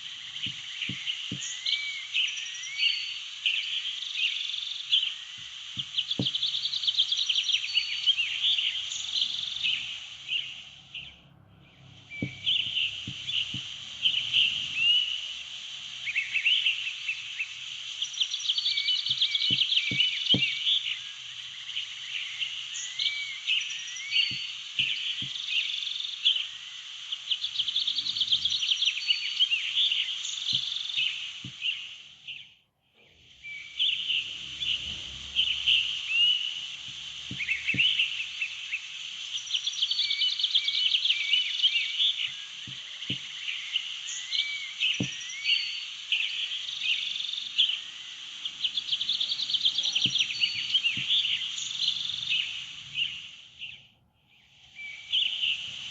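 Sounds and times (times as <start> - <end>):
songbirds chirping and trilling: 0.0 - 55.9
faint low taps: 5.4 - 6.5, 12.2 - 13.8, 19.1 - 20.6.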